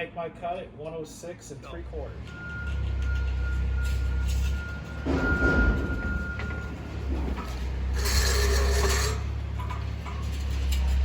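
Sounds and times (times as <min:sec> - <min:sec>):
metal runner being cut: 0:07.9 - 0:09.3.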